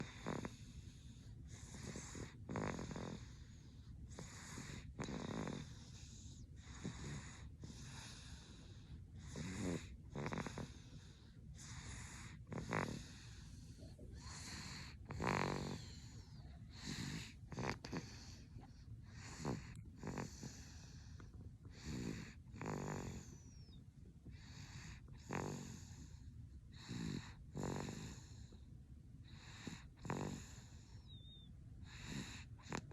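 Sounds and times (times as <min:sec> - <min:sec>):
person snoring: 0:00.0 - 0:00.7, 0:04.2 - 0:08.6, 0:09.2 - 0:10.9, 0:11.6 - 0:18.4, 0:19.1 - 0:20.9, 0:21.7 - 0:23.3.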